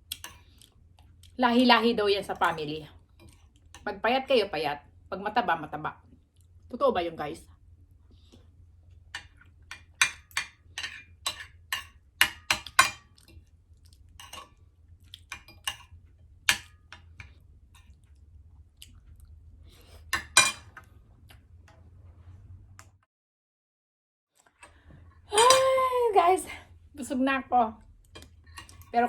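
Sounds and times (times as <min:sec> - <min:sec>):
utensil clinking on a plate: 0:09.2 - 0:13.4
mouth clicks and chewing: 0:15.0 - 0:15.3, 0:17.8 - 0:19.4.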